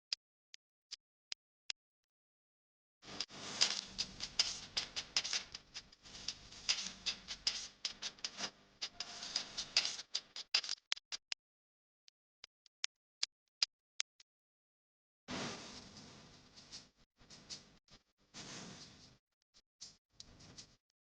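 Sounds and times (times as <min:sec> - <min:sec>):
oil sizzling and popping: 0:03.0 - 0:11.0.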